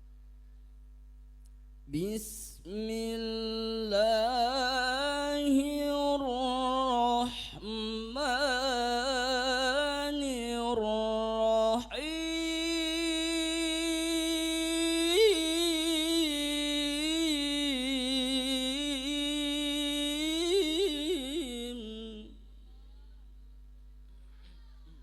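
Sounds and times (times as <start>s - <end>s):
man reciting a long melodic note: 1.9s - 22.7s.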